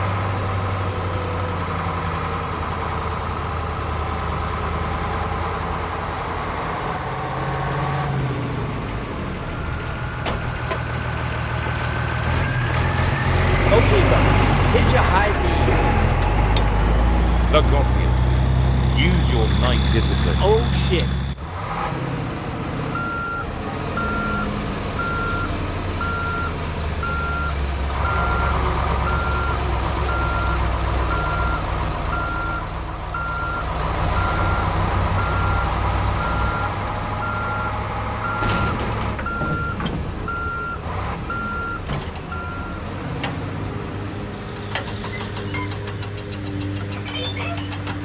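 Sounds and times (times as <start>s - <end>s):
low engine rumble: 8.8s - 21.4s
reversing alarm beeping: 17.6s - 21.4s.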